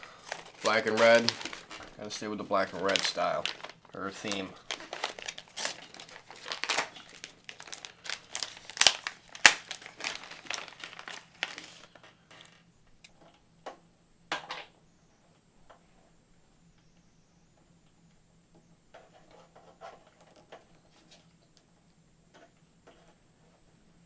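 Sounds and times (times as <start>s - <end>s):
plastic packet crinkling: 0.0s - 12.5s.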